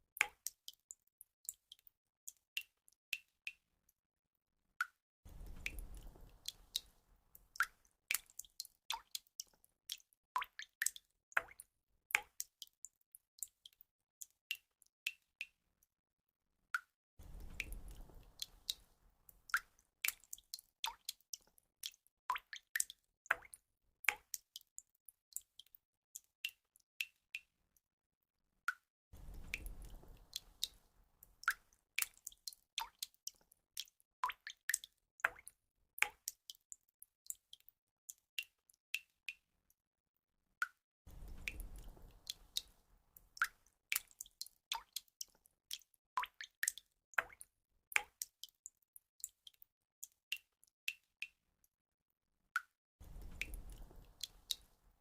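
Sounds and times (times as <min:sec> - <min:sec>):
water drips and plops: 0:00.1 - 0:04.0, 0:04.8 - 0:15.9, 0:16.8 - 0:27.8, 0:28.6 - 0:39.5, 0:40.6 - 0:51.8, 0:52.6 - 0:55.0
low rushing water: 0:29.2 - 0:31.6.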